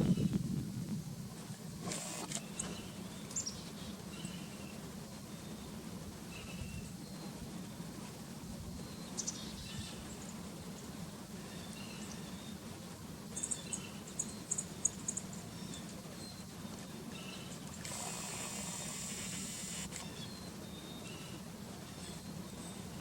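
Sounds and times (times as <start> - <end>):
steady low hum: 0.0 - 23.0
faint bird chirps: 2.3 - 7.5, 8.7 - 12.7, 13.3 - 18.0
hiss: 17.8 - 20.0.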